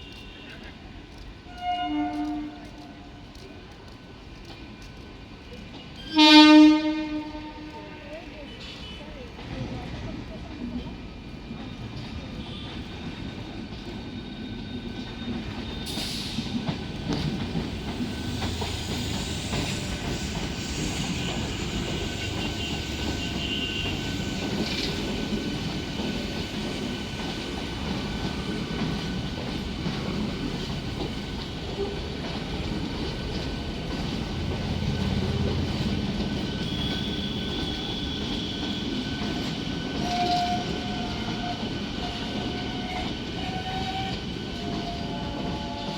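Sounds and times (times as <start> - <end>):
rail joint clacks: 0.0 - 45.9
train wheels rumbling on rails: 0.0 - 45.9
high wheel squeal: 17.8 - 25.3, 34.9 - 45.9.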